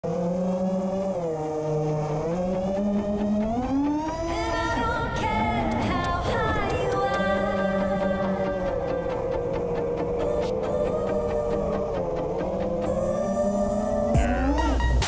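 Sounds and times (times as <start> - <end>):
quadcopter motors whining: 0.0 - 4.3
background music with a beat: 3.0 - 15.0.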